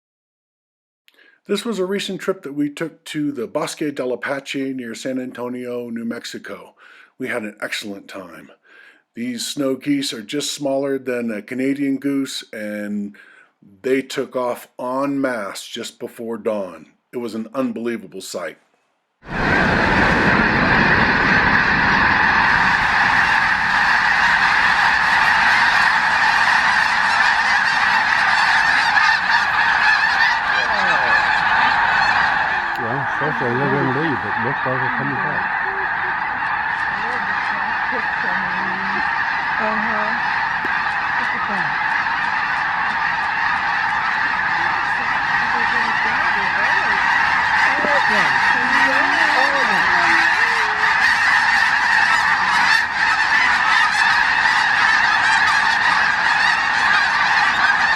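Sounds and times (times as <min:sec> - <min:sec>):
flock of geese honking: 0:19.3 - 0:57.9.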